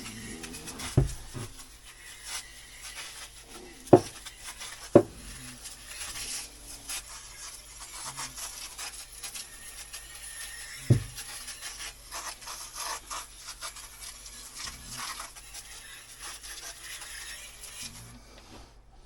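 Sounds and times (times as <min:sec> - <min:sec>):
rubbing and scraping handling noise: 0:00.0 - 0:18.9
sharp knocks: 0:01.0 - 0:01.5, 0:05.0 - 0:05.2, 0:10.9 - 0:11.2.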